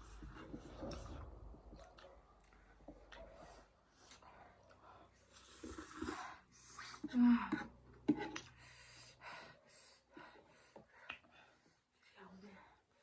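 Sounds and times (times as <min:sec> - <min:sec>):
slurping noodles: 0:05.2 - 0:07.1.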